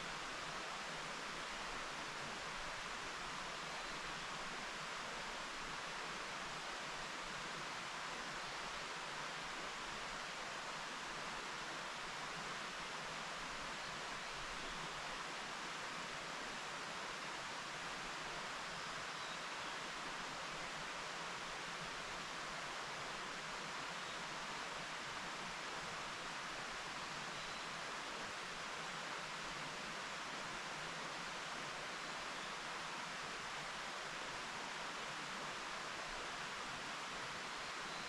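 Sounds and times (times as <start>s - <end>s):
stream flowing over rocks: 0.0s - 38.0s.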